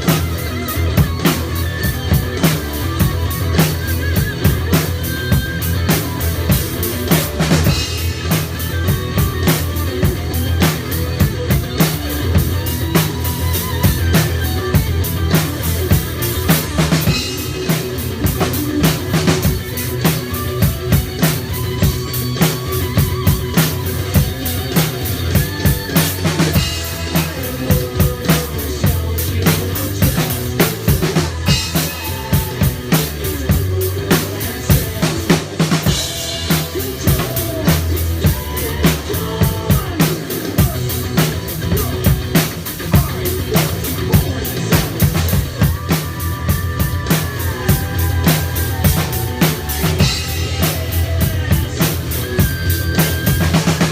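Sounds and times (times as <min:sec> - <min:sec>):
rock drum kit beat: 0:00.0 - 0:53.9
pitched instruments: 0:43.4 - 0:53.9.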